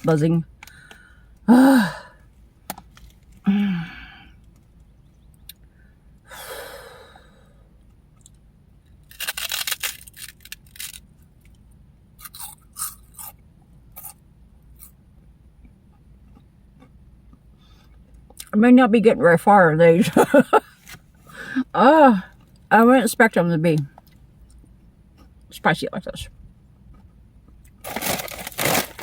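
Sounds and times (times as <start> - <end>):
loud breath: 5.7 - 7.7, 21.3 - 21.7
crunching and chewing snacks: 8.1 - 15.0, 15.6 - 18.5, 24.0 - 25.6, 26.8 - 29.0.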